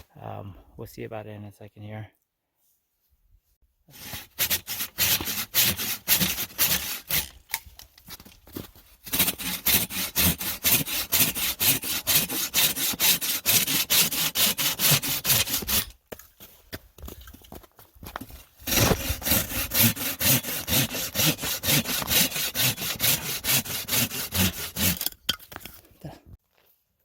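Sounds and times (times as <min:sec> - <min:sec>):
hand saw cutting wood: 0:03.9 - 0:07.4, 0:09.0 - 0:16.0, 0:18.3 - 0:25.2.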